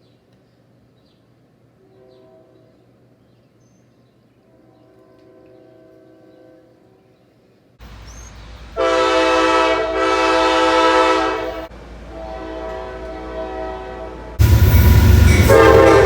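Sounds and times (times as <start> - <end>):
locomotive air horn: 4.5 - 6.9, 8.8 - 16.0
low rumbling: 13.8 - 16.0.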